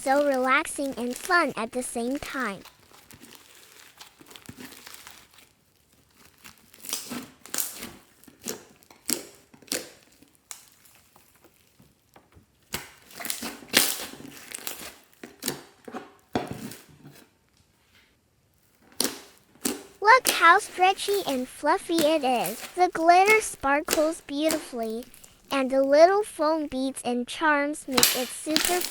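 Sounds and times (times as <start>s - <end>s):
slime squishing: 0.0s - 5.5s, 18.8s - 28.9s
foam beads crunching and crackling: 0.0s - 8.5s, 13.1s - 15.1s, 20.2s - 26.2s, 27.8s - 28.9s.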